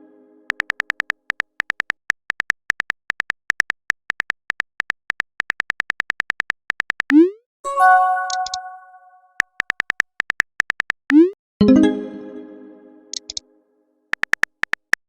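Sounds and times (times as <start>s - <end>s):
typing clicking ticks: 0.5s - 7.3s, 8.3s - 8.6s, 9.4s - 11.4s, 13.1s - 13.4s, 14.1s - 15.0s
notification chime: 7.7s - 9.1s, 11.6s - 13.0s.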